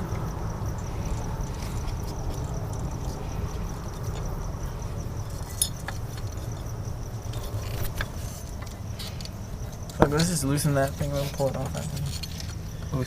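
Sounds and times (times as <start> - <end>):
steady low rumble: 0.0 - 13.0
metal tools clinking on engine parts: 5.2 - 13.0.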